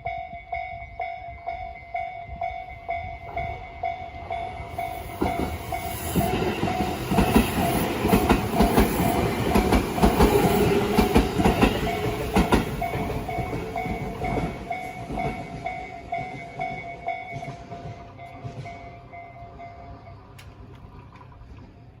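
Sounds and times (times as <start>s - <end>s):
crossing warning bell dinging: 0.0s - 20.8s
train wheels clattering: 4.7s - 21.7s.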